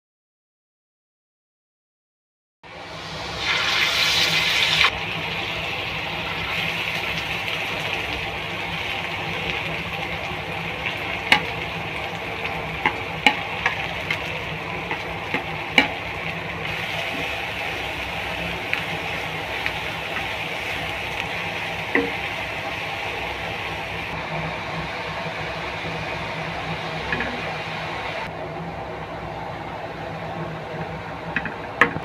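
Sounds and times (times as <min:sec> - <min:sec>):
water gushing: 0:02.7 - 0:24.2
steady cooking hiss: 0:02.7 - 0:32.0.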